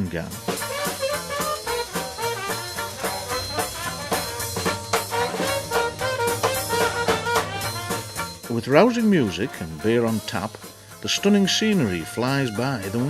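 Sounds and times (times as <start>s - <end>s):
band playing rousing music: 0.0s - 13.0s
steady drum beat: 0.0s - 13.0s
brass notes: 0.4s - 13.0s.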